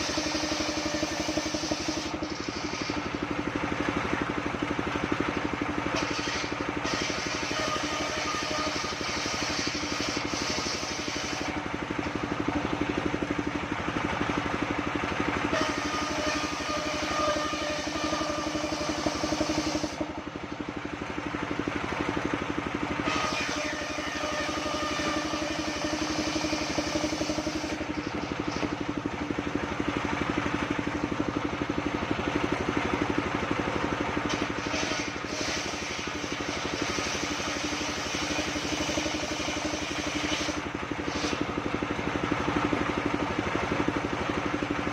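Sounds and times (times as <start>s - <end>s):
band saw cutting wood: 0.0s - 3.6s, 5.9s - 12.8s, 15.5s - 20.2s, 23.0s - 28.8s, 34.2s - 41.6s
engine hum: 0.0s - 44.9s.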